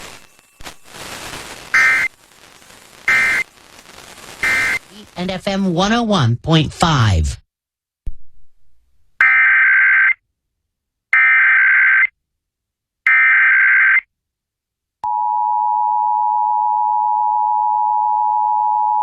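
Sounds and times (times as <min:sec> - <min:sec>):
digital data tone bursts: 0:00.0 - 0:03.7, 0:04.3 - 0:05.3.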